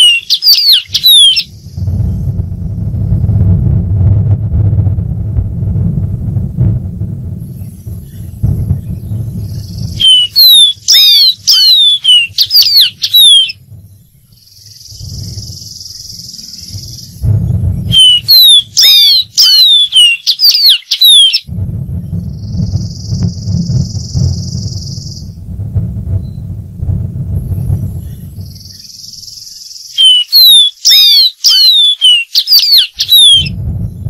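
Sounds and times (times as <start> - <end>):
bird singing whistled notes: 0.0 - 2.3, 7.4 - 25.4, 26.2 - 26.5, 27.4 - 34.0
low background rumble: 0.0 - 20.0, 21.4 - 30.1, 33.4 - 34.0
steady high hiss: 1.4 - 3.9, 6.0 - 19.4.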